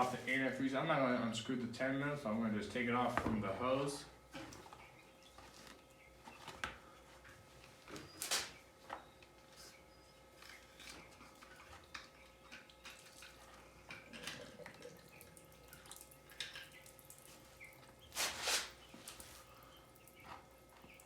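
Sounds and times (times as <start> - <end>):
liquid dripping and trickling: 11.2 - 18.1, 19.1 - 21.0.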